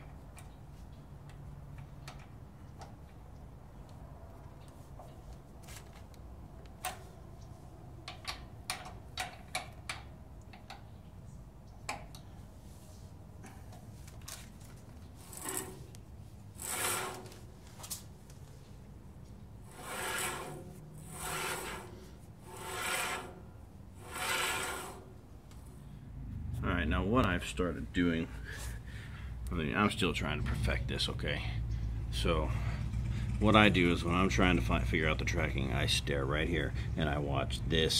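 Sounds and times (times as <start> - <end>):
rasping strokes: 16.6 - 17.5, 19.7 - 25.2.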